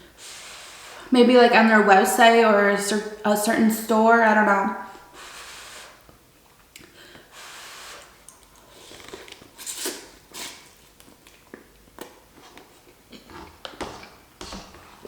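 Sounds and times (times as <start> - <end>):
loud slurps: 5.1 - 6.1, 7.3 - 10.8
chewing noodles: 8.1 - 13.3.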